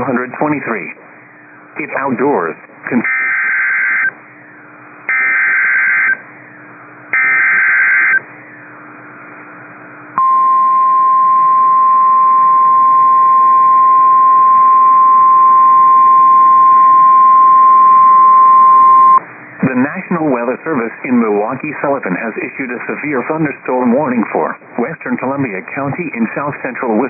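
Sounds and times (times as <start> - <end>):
steady warning alarm tone: 5.1 - 6.2, 7.1 - 8.2, 10.2 - 19.2
data tone bursts: 10.2 - 19.2.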